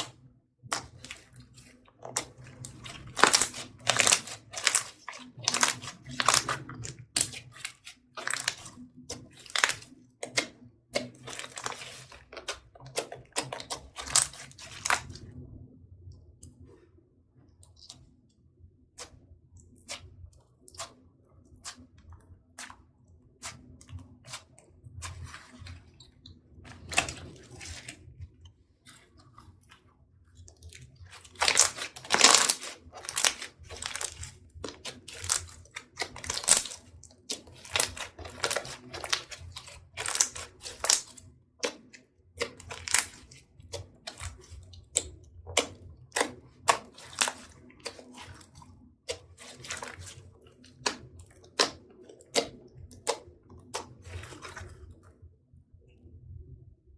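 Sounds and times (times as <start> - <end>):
slime squishing by hand: 0.0 - 15.6, 18.9 - 55.2
slime popping and crackling: 2.1 - 15.2, 31.0 - 54.6.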